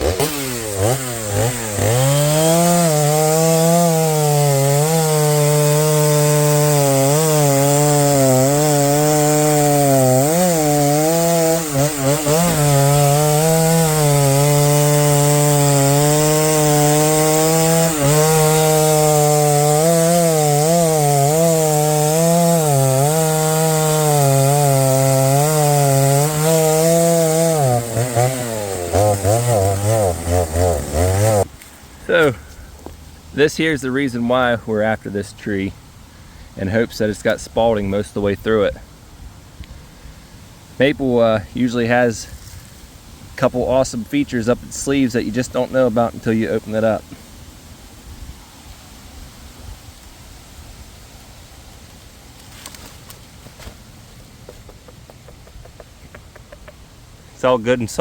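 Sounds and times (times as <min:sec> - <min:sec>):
chainsaw cutting log: 0:00.0 - 0:35.4, 0:43.7 - 0:47.1.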